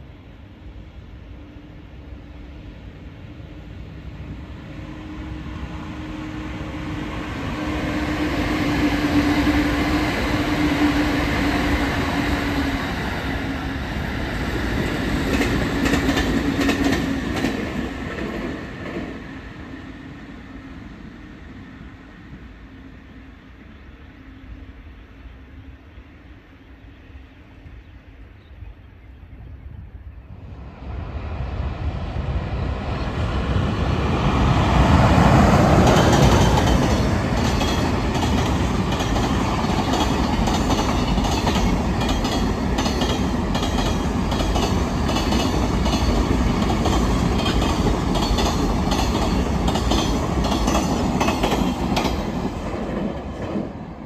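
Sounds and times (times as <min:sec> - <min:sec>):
train passing: 0:00.0 - 0:28.3, 0:29.7 - 0:54.0
wheels clicking over rail joints: 0:35.8 - 0:53.6.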